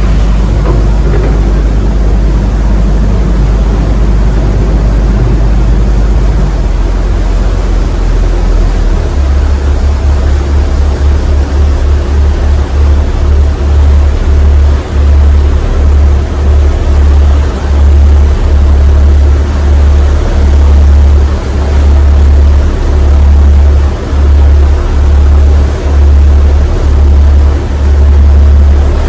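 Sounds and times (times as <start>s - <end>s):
ship engine droning: 0.0s - 29.0s
steady rushing noise: 0.0s - 29.0s.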